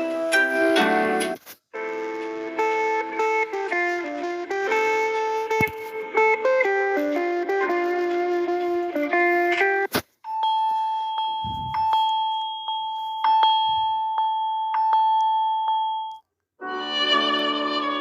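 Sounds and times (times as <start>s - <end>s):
plucked guitar ringtone: 0.0s - 9.8s, 10.4s - 15.7s
held electronic ringtone: 10.2s - 16.2s.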